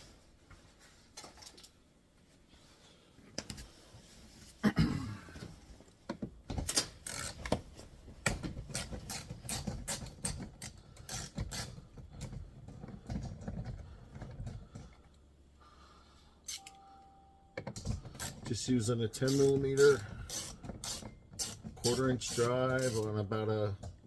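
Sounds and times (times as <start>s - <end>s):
ratchet clicking: 6.7s - 7.5s, 8.7s - 12.4s, 18.0s - 18.5s, 19.2s - 23.1s.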